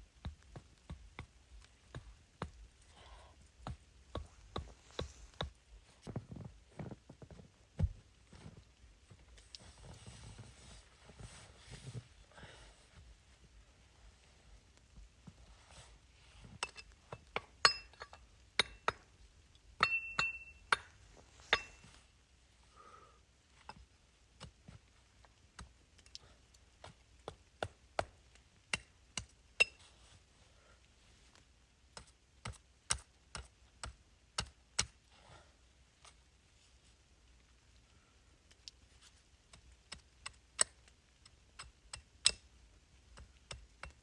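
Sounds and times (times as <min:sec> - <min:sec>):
metallic ring: 0:19.8 - 0:20.6, 0:21.5 - 0:21.8.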